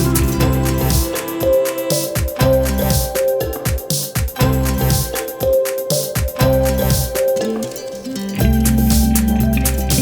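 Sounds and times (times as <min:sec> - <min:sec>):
upbeat funk music: 0:00.0 - 0:10.0.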